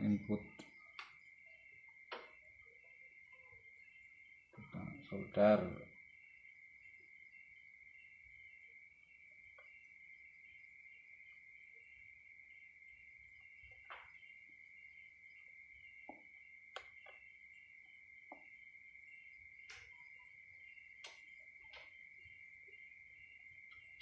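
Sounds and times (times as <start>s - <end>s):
cricket trill: 0.0s - 24.0s
soldering clicks and taps: 16.0s - 17.3s, 19.6s - 20.0s, 21.0s - 22.0s.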